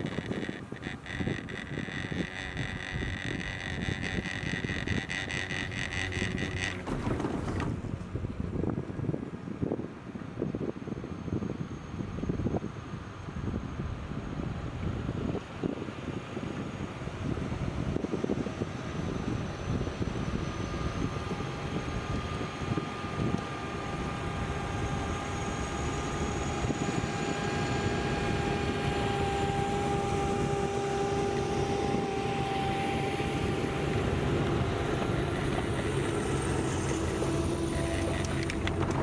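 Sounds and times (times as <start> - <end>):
snow groomer engine rumble: 0.0 - 9.4, 23.2 - 39.0.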